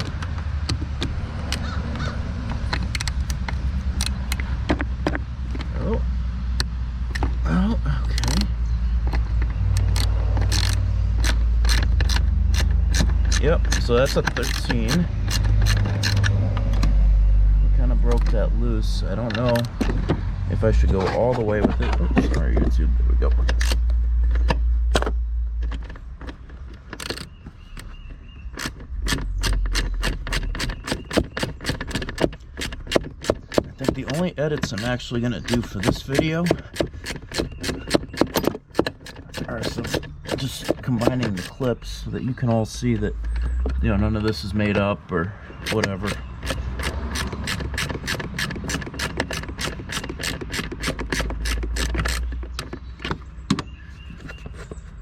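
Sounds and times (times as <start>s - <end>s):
socket ratchet clicking: 0.0s - 4.5s, 9.1s - 17.0s, 23.4s - 24.5s, 25.6s - 41.7s, 45.5s - 53.3s
metal scraping: 9.1s - 16.8s.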